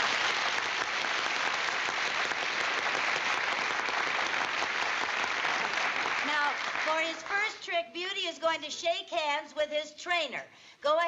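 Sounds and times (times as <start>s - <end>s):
audience applauding: 0.0s - 7.5s.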